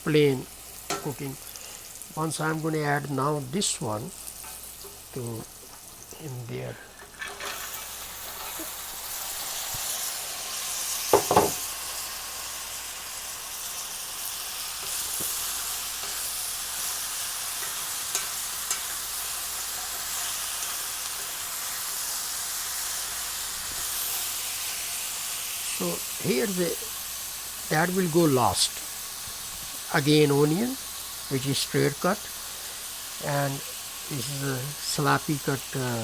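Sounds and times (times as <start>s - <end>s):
okra sizzling in hot oil: 0.0s - 36.0s
knocks on pan: 11.1s - 11.6s.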